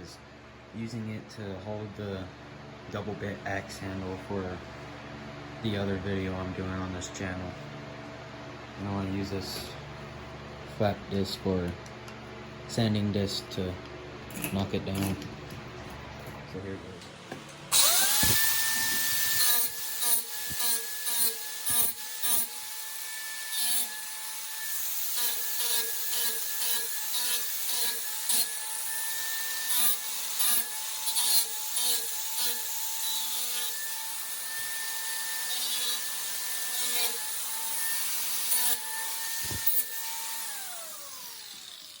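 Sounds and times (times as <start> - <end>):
angle grinder motor whine: 17.1 - 22.8, 35.7 - 42.0.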